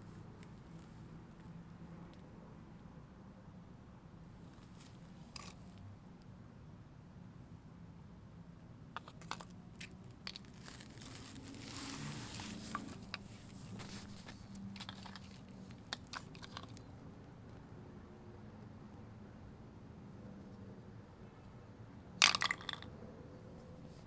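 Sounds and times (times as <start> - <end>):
crinkling rustle: 4.4 - 5.8, 9.2 - 16.9.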